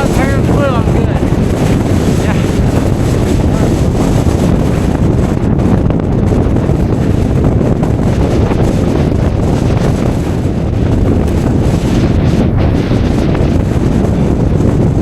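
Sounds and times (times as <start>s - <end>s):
strong wind on microphone: 0.0s - 15.0s.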